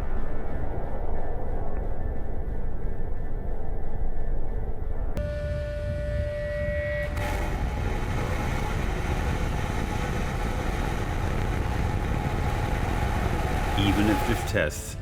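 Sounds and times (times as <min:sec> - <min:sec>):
rocket engines roaring: 0:05.2 - 0:15.0.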